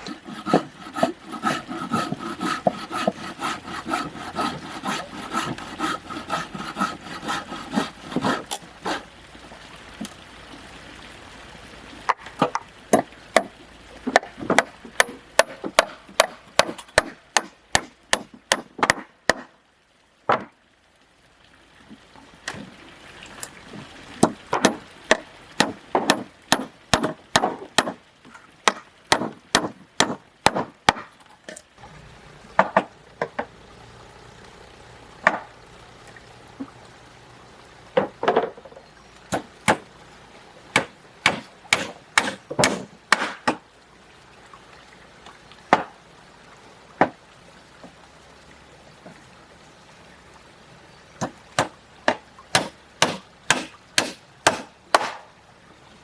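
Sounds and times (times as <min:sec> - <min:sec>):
hand tool striking wood: 0:00.0 - 0:09.0, 0:14.1 - 0:19.5, 0:24.2 - 0:28.0, 0:28.7 - 0:31.1, 0:39.3 - 0:39.8, 0:40.8 - 0:43.6, 0:51.6 - 0:55.2.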